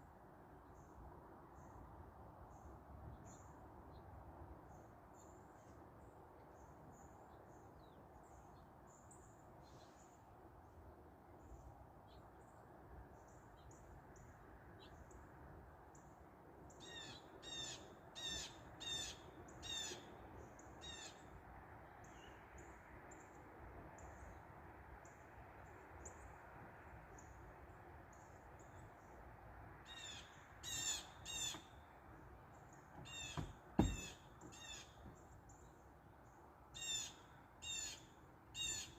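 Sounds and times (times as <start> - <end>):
short knock: 33.0 - 34.6
bird harsh repeated calls: 33.0 - 35.0.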